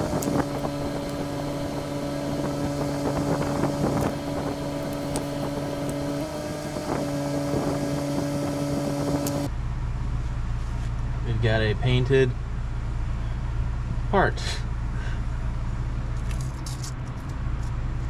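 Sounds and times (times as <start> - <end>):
wind noise on microphone: 0.0 - 9.5
motor hum: 0.0 - 11.2.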